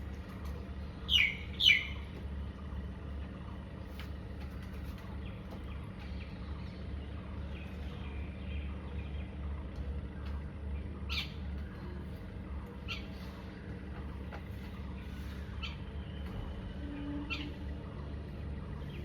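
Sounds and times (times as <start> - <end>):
steady low hum: 0.0 - 19.0
bird chirping: 1.0 - 2.1.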